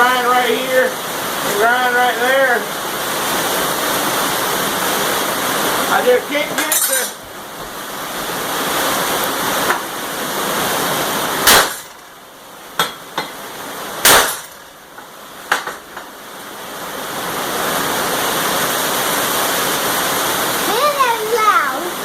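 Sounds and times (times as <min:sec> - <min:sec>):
steady rushing noise: 0:00.0 - 0:22.0
sharp metal knocks: 0:11.4 - 0:12.1, 0:12.8 - 0:13.4, 0:14.0 - 0:16.1.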